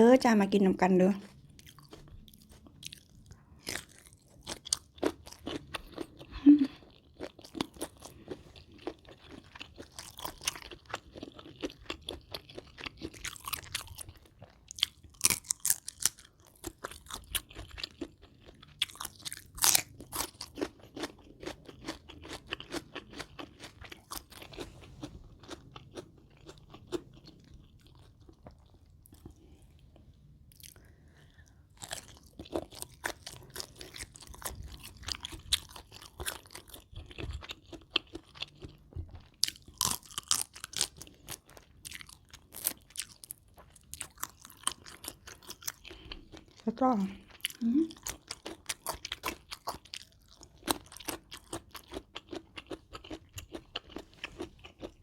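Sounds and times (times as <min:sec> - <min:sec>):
crunching and chewing food: 0:00.8 - 0:55.0.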